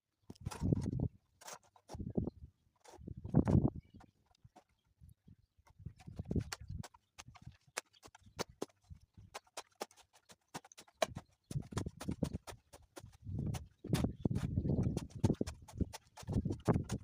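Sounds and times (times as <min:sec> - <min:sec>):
tools scraping concrete: 0:00.4 - 0:02.0.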